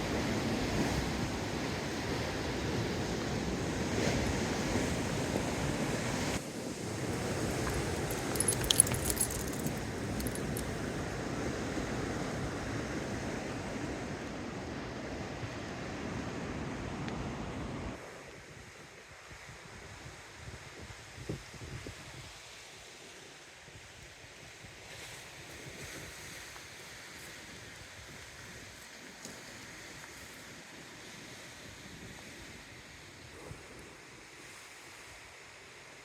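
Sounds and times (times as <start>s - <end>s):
brief metallic jingle: 7.6s - 10.8s.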